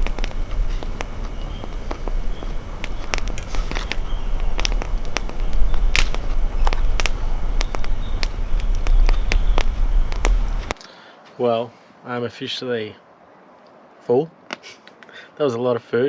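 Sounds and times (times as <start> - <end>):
campfire crackling and popping: 0.0 - 10.8
low fire rumble: 0.0 - 10.8.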